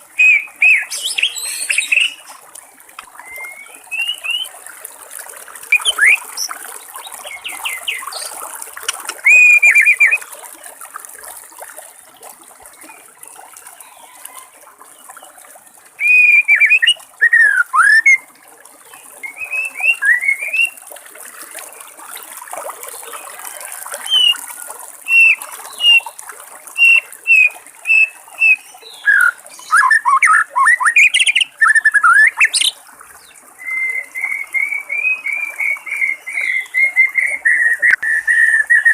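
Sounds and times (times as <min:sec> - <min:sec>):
water trickling: 0:00.0 - 0:38.9
bird singing whistled phrases: 0:00.2 - 0:02.3, 0:03.2 - 0:04.5, 0:05.6 - 0:06.6, 0:09.2 - 0:10.2, 0:16.0 - 0:18.2, 0:19.2 - 0:20.8, 0:24.1 - 0:24.4, 0:25.1 - 0:26.0, 0:26.8 - 0:32.7, 0:33.6 - 0:38.9.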